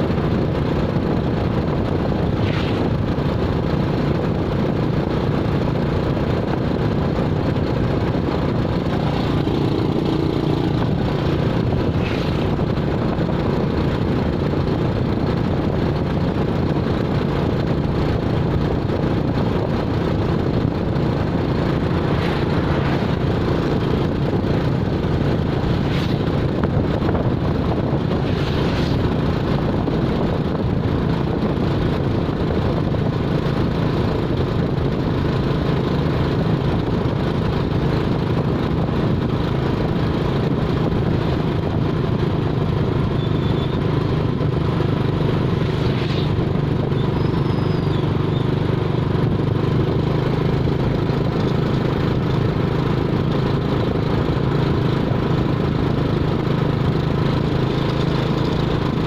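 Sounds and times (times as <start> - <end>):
road noise: 0.0 - 59.0
vehicle engine hum: 0.0 - 59.0.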